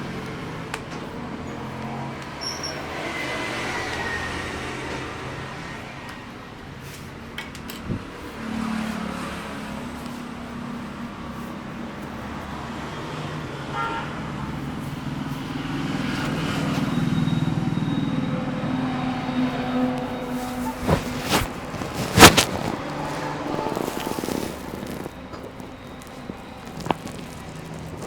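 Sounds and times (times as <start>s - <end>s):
vehicle engines passing: 0.0s - 28.0s
car horn toot: 13.7s - 14.2s.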